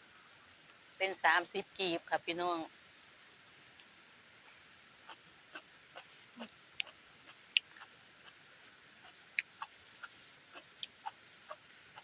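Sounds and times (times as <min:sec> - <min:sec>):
mouth clicks from chewing: 0:09.3 - 0:11.0.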